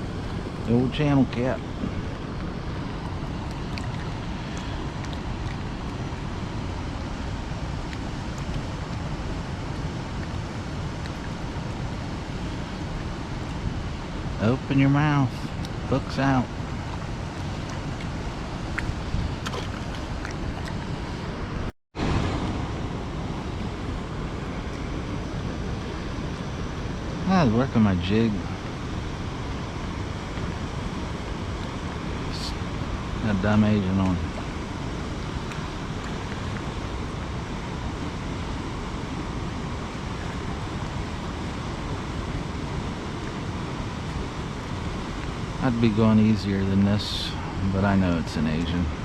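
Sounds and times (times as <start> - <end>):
water rushing through spillway: 0.0 - 21.3
spillway water rushing: 0.0 - 49.0
wind buffeting microphone: 0.0 - 49.0
rain: 22.0 - 49.0.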